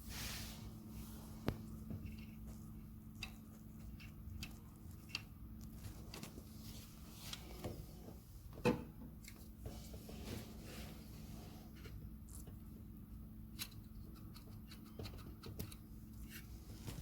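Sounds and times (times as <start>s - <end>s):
steady low hum: 0.0s - 17.0s
tools clicking and tapping: 13.6s - 15.8s.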